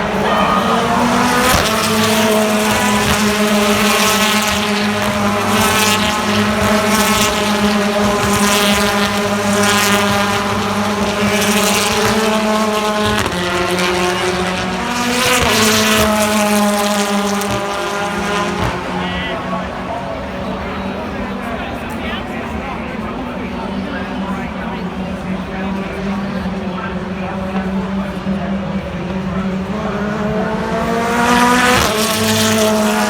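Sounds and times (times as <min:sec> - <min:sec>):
racing car engine running: 0:00.0 - 0:33.0.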